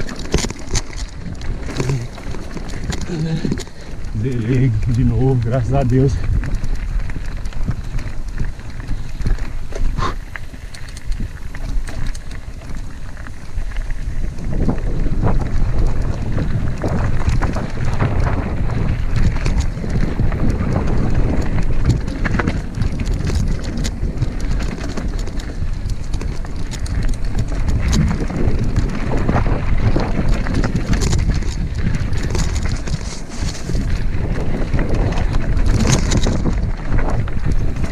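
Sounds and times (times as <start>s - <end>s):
bike rattling and knocking: 0.0s - 37.9s
wind buffeting microphone: 0.0s - 37.9s.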